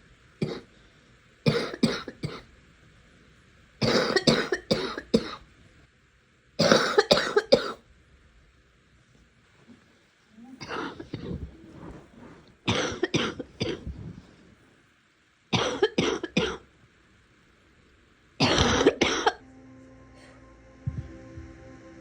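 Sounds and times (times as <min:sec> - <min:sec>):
person coughing wet coughs: 0:00.4 - 0:00.7, 0:01.5 - 0:02.4, 0:03.8 - 0:05.4, 0:06.6 - 0:07.8, 0:10.6 - 0:11.5, 0:12.7 - 0:14.0, 0:15.5 - 0:16.7, 0:18.4 - 0:19.4.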